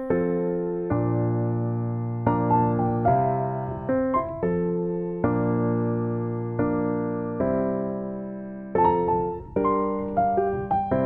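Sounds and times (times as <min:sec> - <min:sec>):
gentle electric piano melody: 0:00.0 - 0:11.0.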